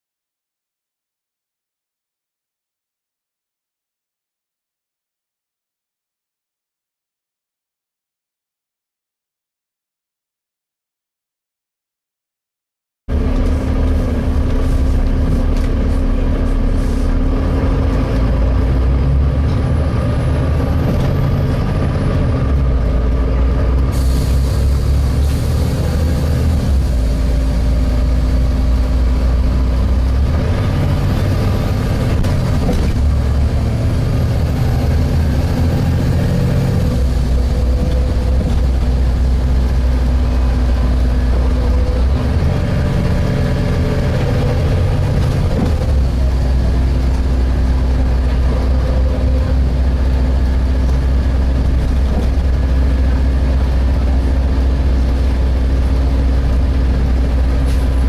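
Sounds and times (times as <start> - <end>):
bus diesel engine drone: 13.1 - 58.0.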